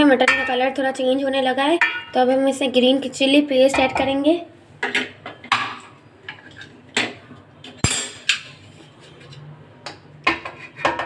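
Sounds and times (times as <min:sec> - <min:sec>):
metal spoon scraping a pot: 0:05.4 - 0:06.8, 0:07.7 - 0:11.0.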